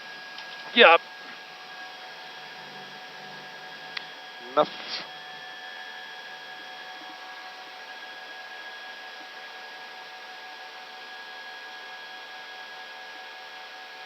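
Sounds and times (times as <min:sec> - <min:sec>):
airflow and engine hiss: 0:00.5 - 0:01.0, 0:02.6 - 0:05.2.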